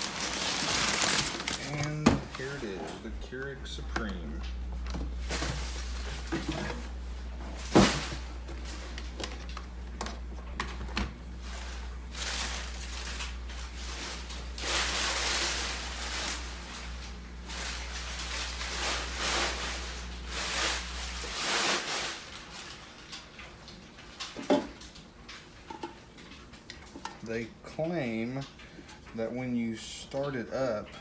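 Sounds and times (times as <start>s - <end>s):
rustling: 0.0s - 3.0s
steady low hum: 0.0s - 31.0s.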